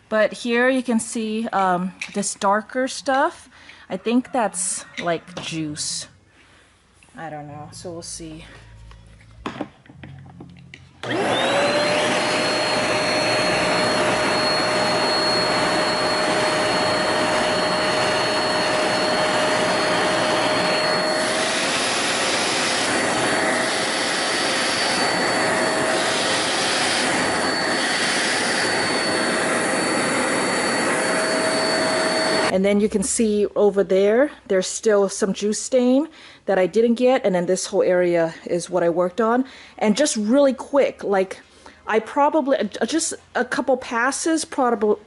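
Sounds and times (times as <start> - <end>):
carpet cleaner suction motor whine: 11.0 - 32.5.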